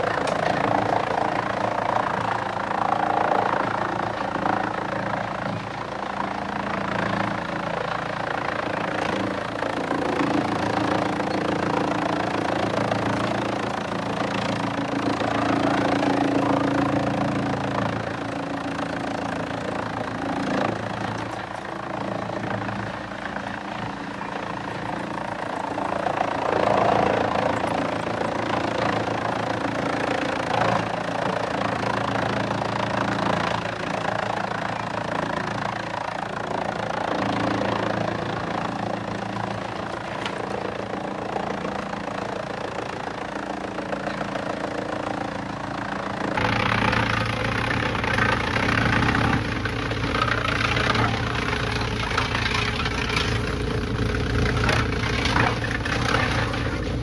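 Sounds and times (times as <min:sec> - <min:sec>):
heavy machinery engine running: 0:45.4 - 0:57.0.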